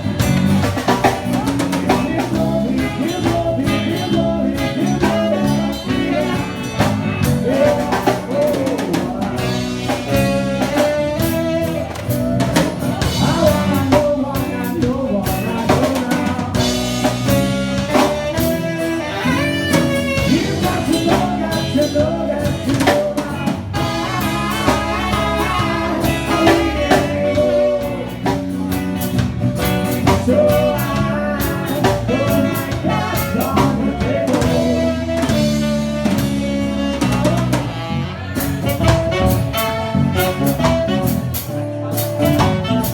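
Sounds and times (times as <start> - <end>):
band playing pop-rock: 0.0 - 42.9
drum kit beat: 0.0 - 42.9
person singing: 0.0 - 42.9.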